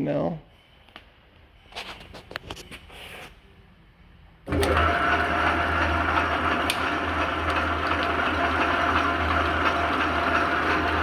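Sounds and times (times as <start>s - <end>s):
mill motor humming: 4.5s - 11.0s.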